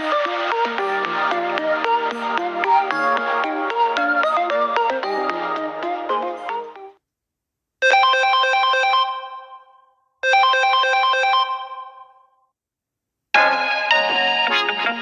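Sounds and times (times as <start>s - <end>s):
phone ringtone melody: 7.8s - 9.6s, 10.2s - 12.2s.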